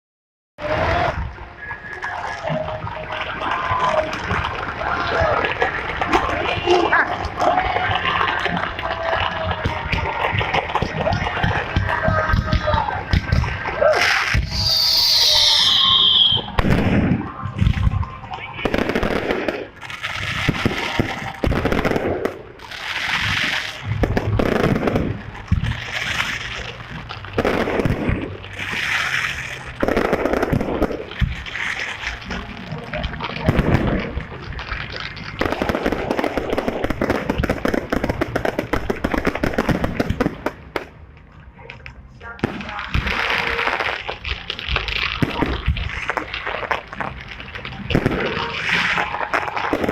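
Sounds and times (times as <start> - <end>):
firework crackling: 0.6 - 49.9.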